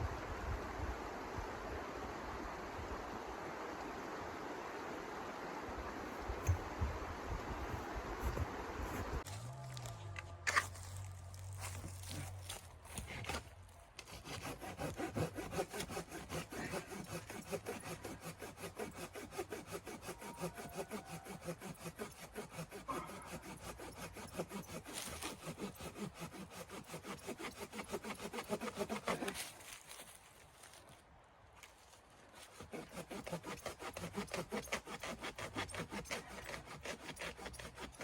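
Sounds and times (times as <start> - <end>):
hand saw cutting wood: 6.3 - 6.7, 10.5 - 30.2, 32.3 - 38.0.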